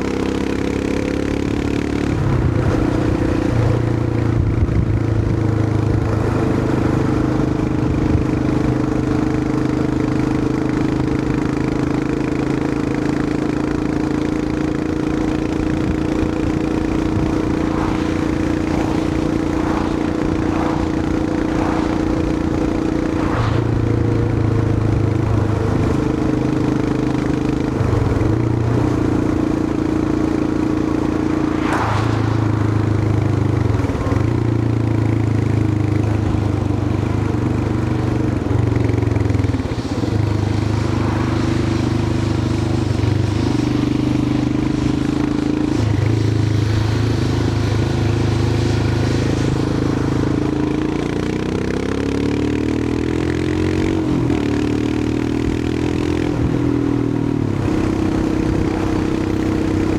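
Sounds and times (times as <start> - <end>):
motorcycle engine running: 0.0 - 59.9
wind rush: 15.3 - 35.0, 38.4 - 44.6.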